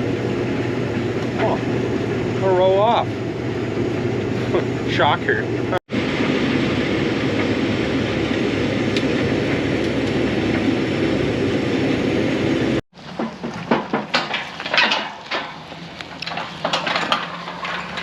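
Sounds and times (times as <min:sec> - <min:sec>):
low engine hum: 0:00.0 - 0:14.6
combine harvester running: 0:00.0 - 0:18.0
scattered clicks and knocks: 0:13.0 - 0:18.0.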